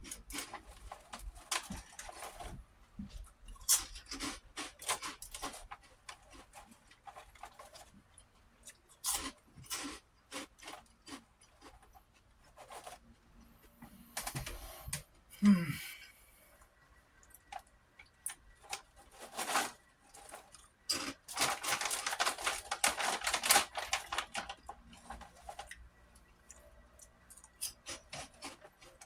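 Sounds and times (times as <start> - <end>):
crunching prawn crackers: 0.0 - 2.5, 3.1 - 13.0, 17.2 - 29.0.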